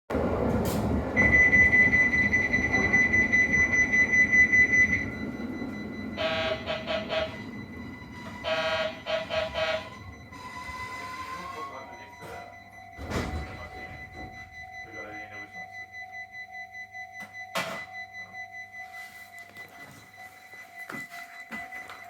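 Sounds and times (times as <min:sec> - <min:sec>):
train rumble: 0:00.1 - 0:12.3
high electronic alarm tone: 0:01.2 - 0:22.0
pulsing electronic warning tones: 0:01.2 - 0:22.0.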